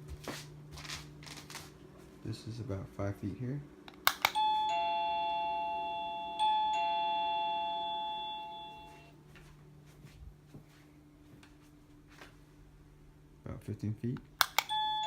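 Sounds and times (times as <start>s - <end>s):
doorbell button click: 4.1s - 9.1s, 14.4s - 15.0s
two-note ding-dong chime: 4.3s - 9.1s.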